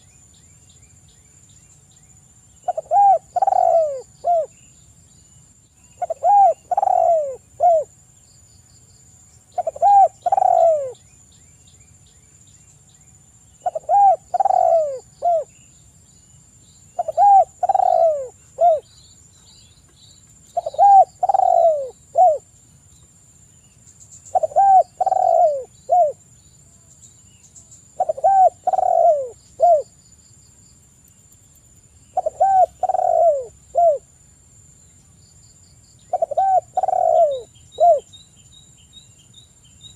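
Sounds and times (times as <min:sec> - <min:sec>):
faint high-pitched hum: 0:00.0 - 0:39.9
dove cooing: 0:02.6 - 0:04.5, 0:06.0 - 0:07.9, 0:09.6 - 0:11.0, 0:13.6 - 0:15.5, 0:17.0 - 0:18.9, 0:20.6 - 0:22.5, 0:24.3 - 0:26.2, 0:28.0 - 0:29.9, 0:32.2 - 0:34.1, 0:36.1 - 0:38.1.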